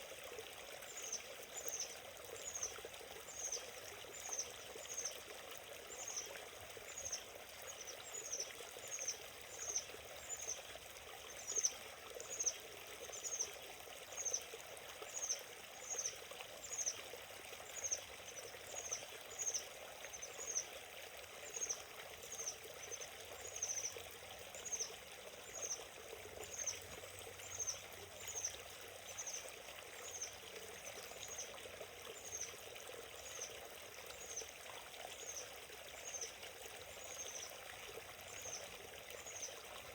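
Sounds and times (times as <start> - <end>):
stream flowing over stones: 0.0 - 39.9.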